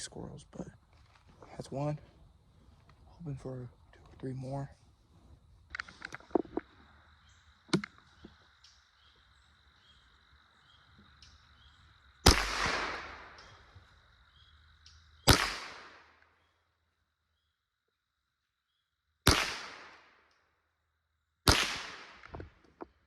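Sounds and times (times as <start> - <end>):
rifle shots echoing: 12.2 - 13.6, 15.3 - 16.2, 19.3 - 20.1, 21.5 - 22.4.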